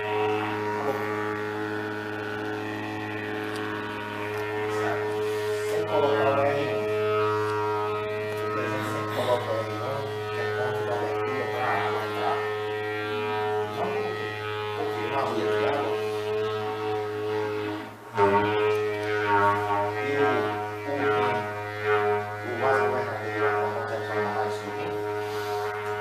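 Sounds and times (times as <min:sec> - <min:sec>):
didgeridoo drone: 0:00.0 - 0:26.0.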